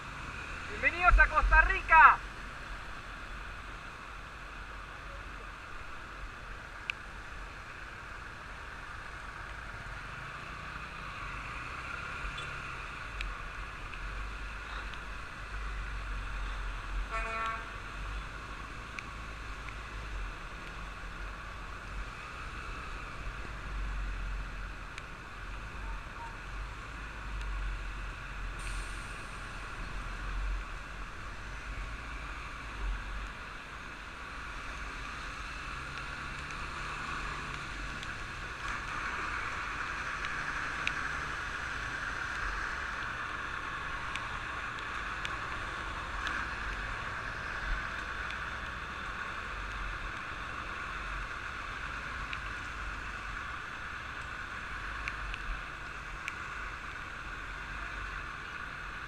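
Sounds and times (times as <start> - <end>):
vehicle horn toot: 17.1 - 17.7
rushing hiss: 28.6 - 29.7.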